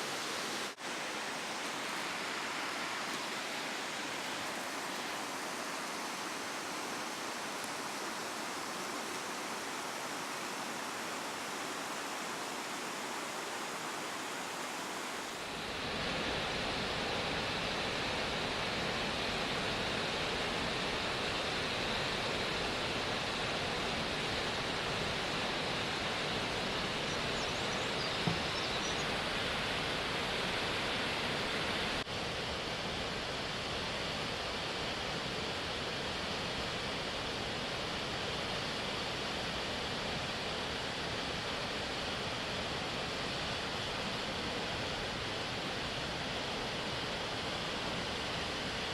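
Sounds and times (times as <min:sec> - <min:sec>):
waterfall rushing: 0:00.0 - 0:32.1.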